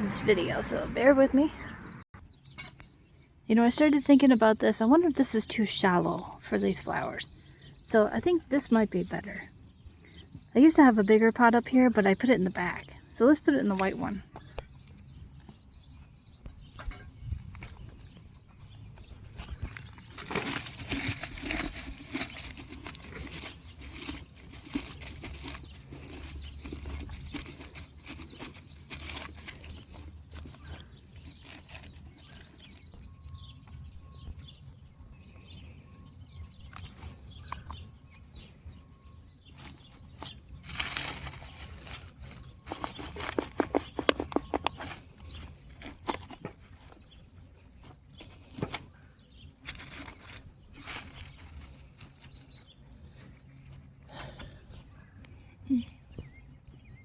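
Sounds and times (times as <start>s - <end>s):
soil rustling and scraping: 16.7s - 38.7s, 39.4s - 55.0s.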